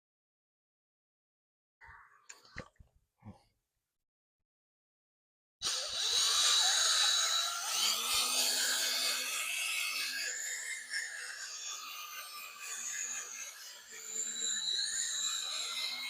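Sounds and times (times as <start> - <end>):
power drill whirring: 5.6 - 16.0.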